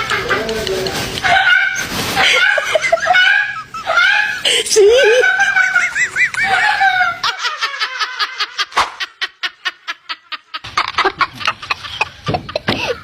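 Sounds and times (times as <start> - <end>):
person laughing hard: 2.2 - 13.0.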